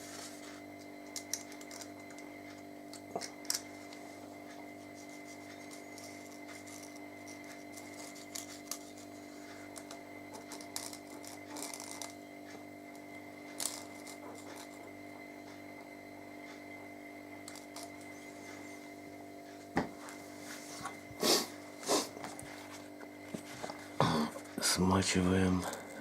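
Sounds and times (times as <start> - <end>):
steady background hum: 0.0 - 26.0
small objects clicking and tapping: 0.8 - 3.7, 9.7 - 12.2, 12.9 - 14.9, 17.4 - 18.1.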